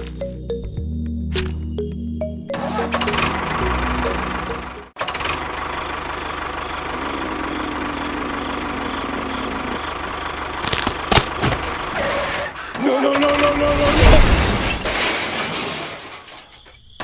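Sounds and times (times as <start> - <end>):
small engine running: 3.0 - 12.6.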